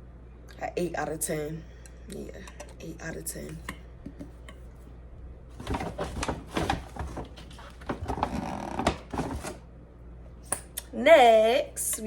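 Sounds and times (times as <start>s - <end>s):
rustling and scraping: 4.7s - 9.6s.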